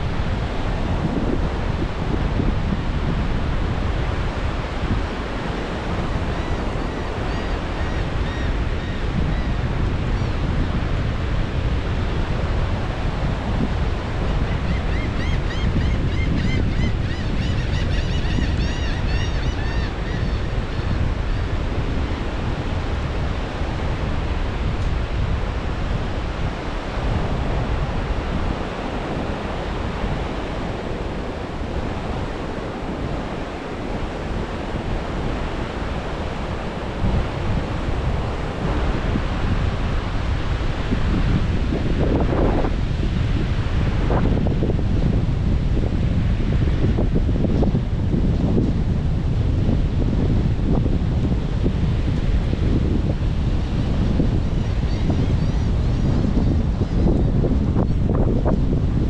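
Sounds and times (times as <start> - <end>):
wind buffeting microphone: 0.0 - 59.0
ocean surf breaking: 19.6 - 54.9.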